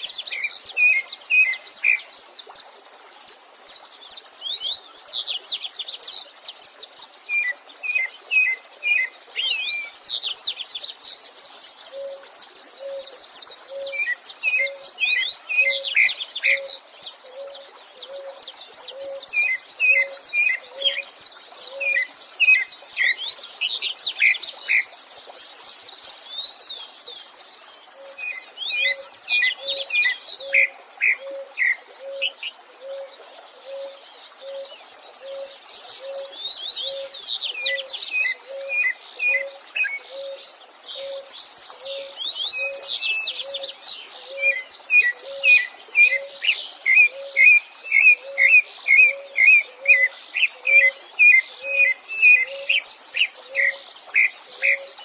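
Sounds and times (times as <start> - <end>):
songbirds twittering: 0.0 - 55.0.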